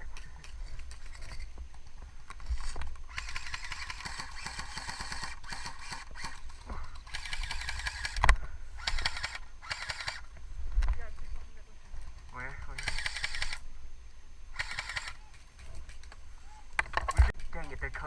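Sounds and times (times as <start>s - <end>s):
airsoft guns firing full auto: 3.1s - 6.4s, 7.0s - 8.2s, 8.8s - 10.2s.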